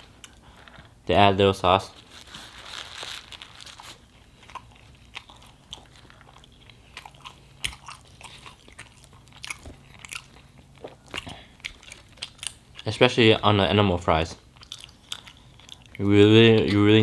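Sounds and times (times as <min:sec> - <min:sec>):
close chewing with mouth clicks: 0:04.0 - 0:13.0, 0:14.4 - 0:16.0.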